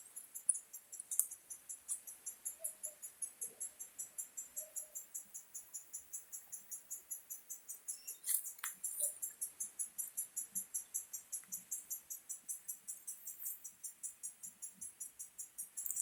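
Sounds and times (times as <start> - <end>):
high-pitched insect chirping: 0.0 - 16.0
short bird-like chirps: 7.9 - 9.2.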